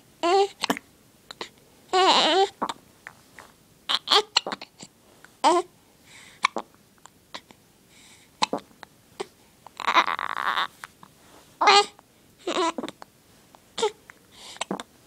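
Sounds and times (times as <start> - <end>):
baby hiccupping: 0.2 - 3.2, 3.9 - 5.7, 6.4 - 6.8, 8.4 - 10.9, 11.6 - 13.1, 13.8 - 14.9.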